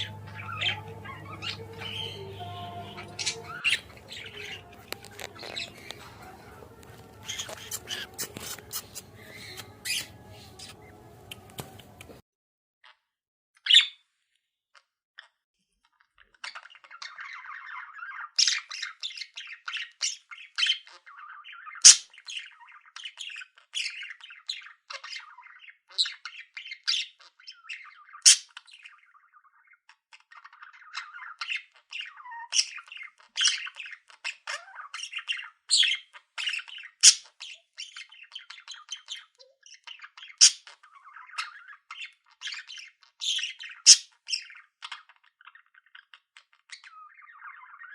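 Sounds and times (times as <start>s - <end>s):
budgerigars warbling: 0.0s - 12.2s, 30.3s - 47.9s.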